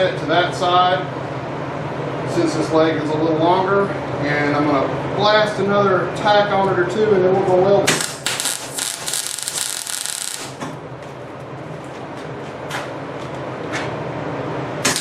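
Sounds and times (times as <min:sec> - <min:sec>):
steady low hum: 0:00.0 - 0:15.0
welding arc crackling: 0:07.9 - 0:10.6.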